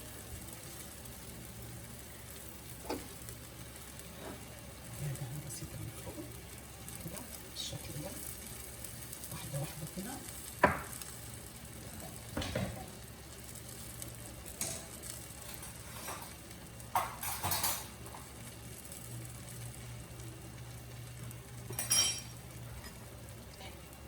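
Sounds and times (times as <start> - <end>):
dough frying in oil: 0.0 - 24.0
utensil clinking on pan: 16.9 - 17.9, 21.7 - 22.4.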